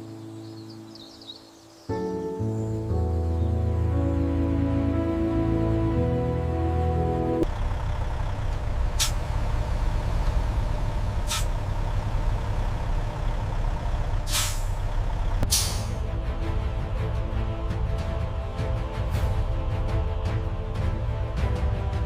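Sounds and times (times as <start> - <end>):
diesel vehicle rumbling: 2.5 - 22.0
air brake hisses: 9.0 - 9.2, 11.2 - 11.6, 14.2 - 14.8, 15.4 - 16.0.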